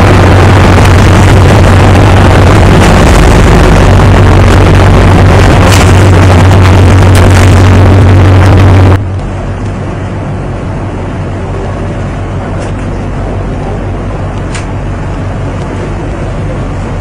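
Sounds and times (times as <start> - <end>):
ship engine rumble: 0.0 - 17.0.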